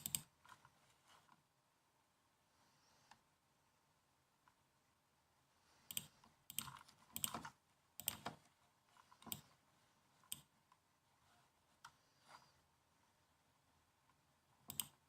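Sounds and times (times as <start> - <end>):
laptop keyboard typing: 0.0 - 0.6, 5.9 - 8.4, 14.7 - 15.0.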